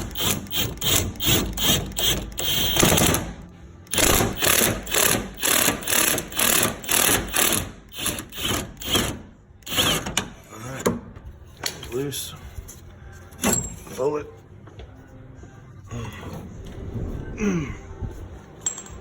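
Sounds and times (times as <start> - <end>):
hand ratchet rasping: 0.0 - 3.2, 3.9 - 10.3.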